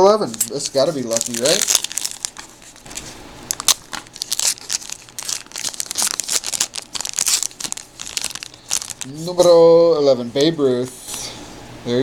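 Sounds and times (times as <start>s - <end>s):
plastic wrapper tearing and crinkling: 0.2s - 9.5s.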